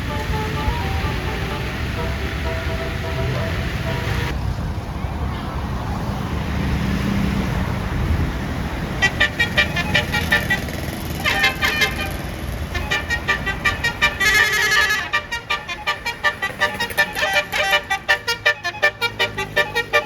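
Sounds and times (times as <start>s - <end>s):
multi-tone horn high notes: 0.0s - 4.3s, 9.0s - 20.0s
bus engine rumble: 0.0s - 20.0s.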